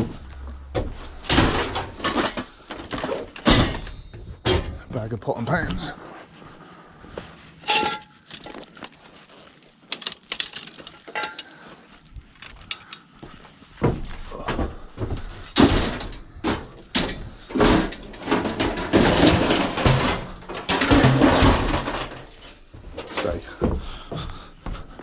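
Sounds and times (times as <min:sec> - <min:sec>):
rustling: 0:05.7 - 0:15.6
metal pots and pans clanking: 0:07.6 - 0:08.2, 0:11.1 - 0:11.5, 0:15.6 - 0:22.5.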